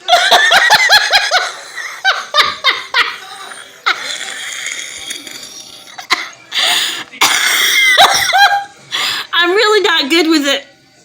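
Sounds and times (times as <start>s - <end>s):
woman laughing: 0.0s - 4.1s
wheezing laughter: 0.0s - 5.1s.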